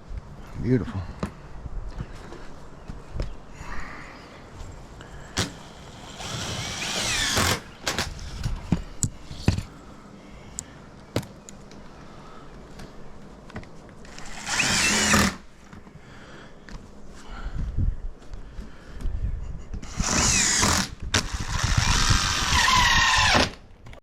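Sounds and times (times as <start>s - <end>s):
power tool motor whining: 5.4s - 8.3s, 14.1s - 15.4s, 19.9s - 23.6s.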